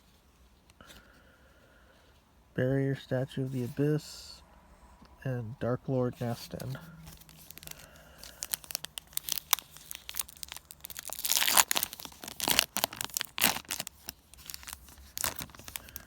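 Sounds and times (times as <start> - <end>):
foil wrapper tearing and crinkling: 7.1 - 16.0.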